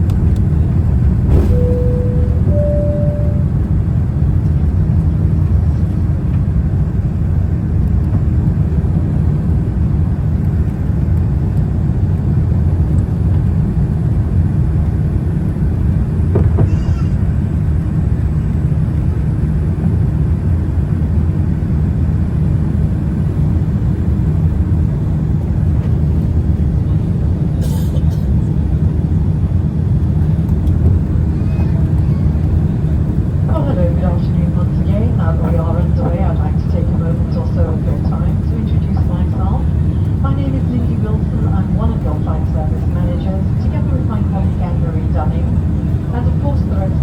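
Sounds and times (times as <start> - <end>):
aircraft cabin engine rumble: 0.0 - 47.0
cabin chime: 1.4 - 3.6.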